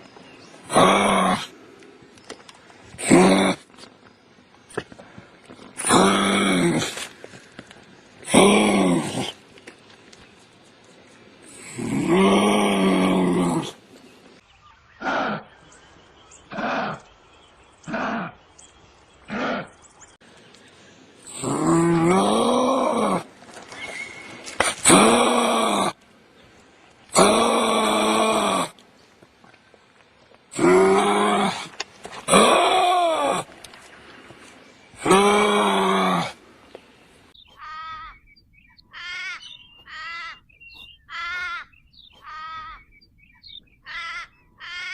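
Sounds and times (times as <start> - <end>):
kangaroo grunts: 15.0 - 15.6, 16.5 - 17.1, 17.8 - 18.4, 19.3 - 19.8
kangaroo pitched call: 37.5 - 38.2, 38.9 - 40.5, 41.1 - 42.9.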